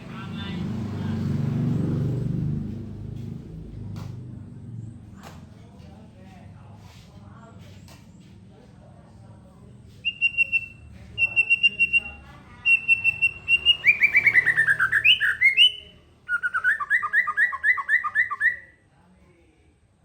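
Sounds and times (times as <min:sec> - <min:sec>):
songbird singing in trills: 0:10.0 - 0:18.8.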